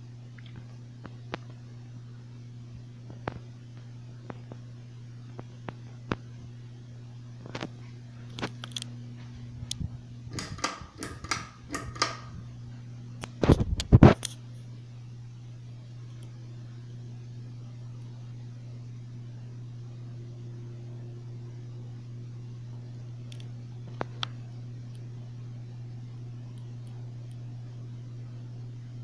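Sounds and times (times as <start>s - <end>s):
ceiling fan motor humming: 0.0s - 29.0s
clicks and rattles: 9.6s - 12.4s.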